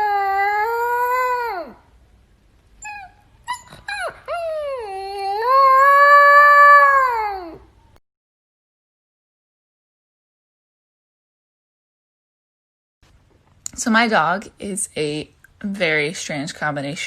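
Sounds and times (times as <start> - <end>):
puppy howling and yipping: 0.0 - 1.8, 2.8 - 7.7.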